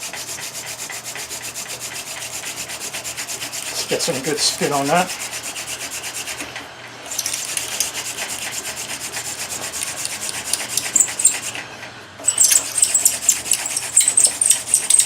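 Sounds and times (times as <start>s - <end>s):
wood-on-wood rubbing: 7.1s - 11.6s, 12.3s - 15.0s.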